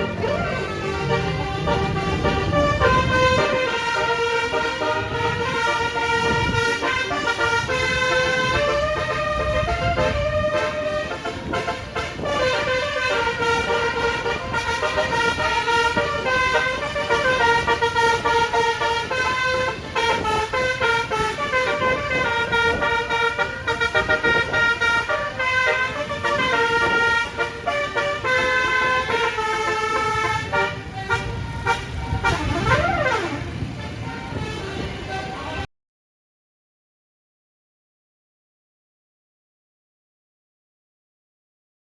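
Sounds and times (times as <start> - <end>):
engine and road noise: 0.0 - 35.7
musical air horn melody: 0.0 - 35.7.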